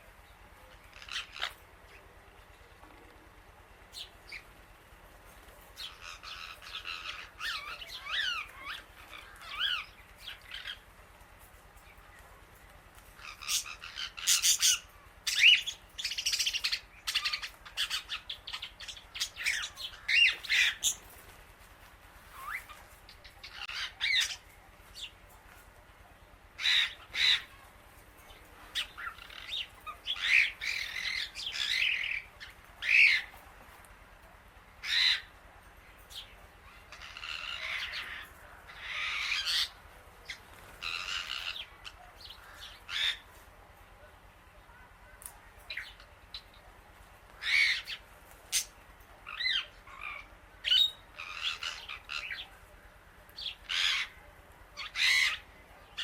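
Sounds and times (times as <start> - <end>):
birds squawking: 0.8 - 2.0, 5.8 - 10.9, 13.1 - 21.3, 22.2 - 25.2, 26.6 - 33.4, 34.8 - 35.4, 36.1 - 43.4, 47.4 - 52.6, 53.4 - 56.0.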